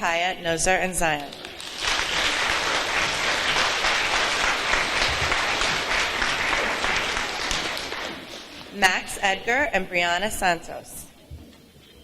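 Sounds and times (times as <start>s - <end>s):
audience applauding: 1.4s - 8.7s.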